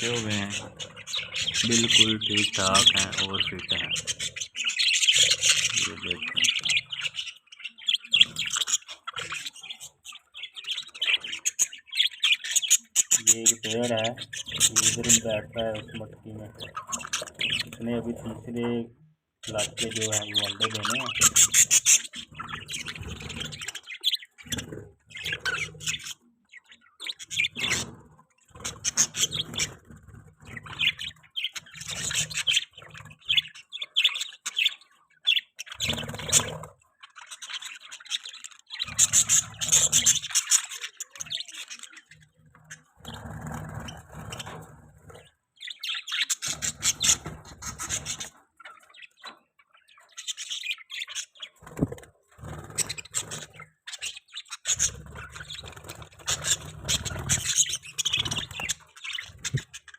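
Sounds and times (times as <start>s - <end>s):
budgerigars chirping: 0.0s - 59.9s.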